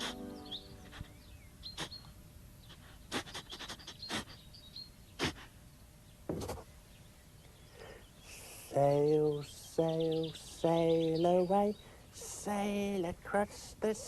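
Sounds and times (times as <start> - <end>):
music cue: 0.0 - 1.1
high bird-like chirps: 0.0 - 2.1
background hiss: 0.0 - 14.0.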